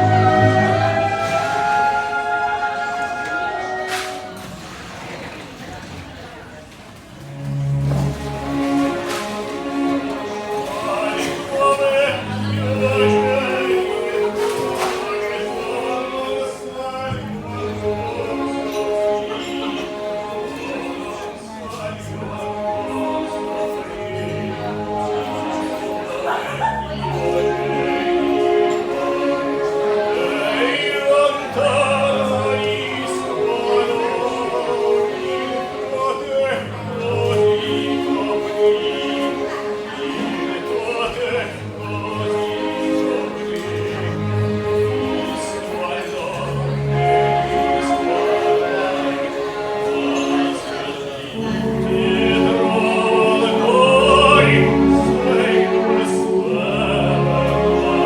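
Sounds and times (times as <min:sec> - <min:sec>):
held chords: 0:00.0 - 0:04.7, 0:07.2 - 0:58.0
operatic singing with vibrato: 0:00.0 - 0:04.8, 0:07.2 - 0:58.0
musical accompaniment: 0:00.0 - 0:05.3, 0:07.1 - 0:58.0
person singing: 0:51.4 - 0:58.0.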